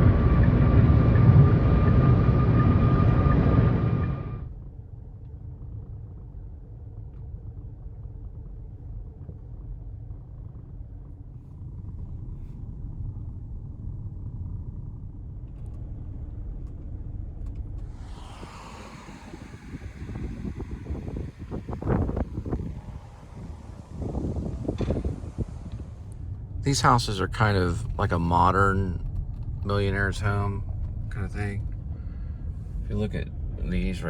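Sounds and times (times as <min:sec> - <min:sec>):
wind noise rush: 0:00.0 - 0:04.5, 0:17.6 - 0:28.3
car road and engine rumble: 0:00.0 - 0:34.0.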